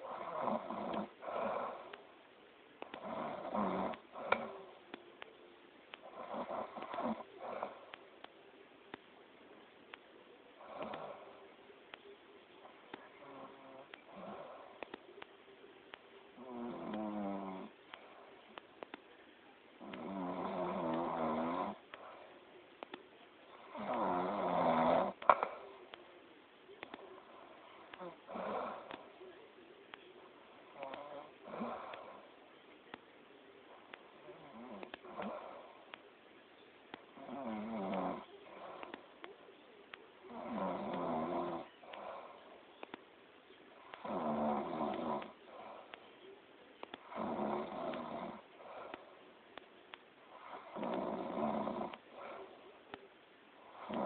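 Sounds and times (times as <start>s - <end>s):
loud rattling snoring: 0.0s - 1.8s, 44.0s - 45.3s, 47.1s - 48.4s, 50.4s - 52.4s, 53.8s - 54.0s
person snoring: 0.0s - 2.0s, 2.9s - 4.8s, 6.0s - 7.9s, 16.4s - 17.8s, 19.8s - 21.8s, 23.6s - 25.6s, 37.2s - 39.0s, 40.3s - 42.4s, 44.0s - 45.9s, 47.0s - 49.0s, 50.4s - 52.6s, 53.7s - 54.0s
soft breathing: 0.0s - 54.0s.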